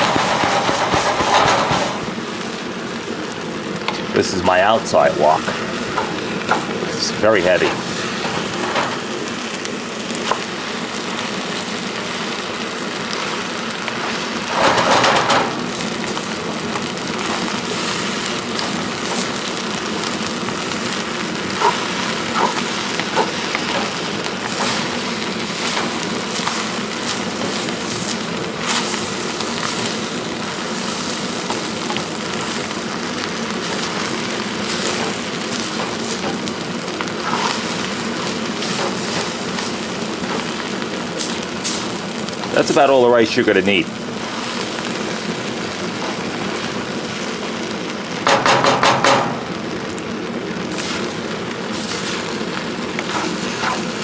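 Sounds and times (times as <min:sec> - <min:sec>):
stirring clicks and scrapes: 0:00.0 - 0:02.2, 0:05.4 - 0:09.2, 0:20.5 - 0:29.0, 0:33.6 - 0:42.8
rice sizzling in a wok: 0:00.0 - 0:04.2, 0:05.5 - 0:54.0.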